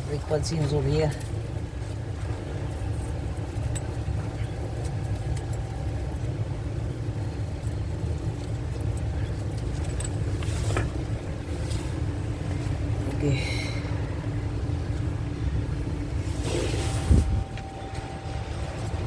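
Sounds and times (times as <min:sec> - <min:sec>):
engine idling low rumble: 0:00.0 - 0:19.0
short scrape: 0:16.3 - 0:17.4.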